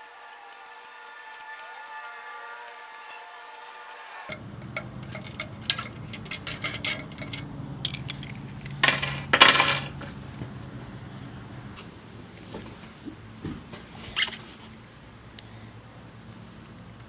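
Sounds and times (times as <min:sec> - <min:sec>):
metal bike parts clinking: 0:04.6 - 0:10.1.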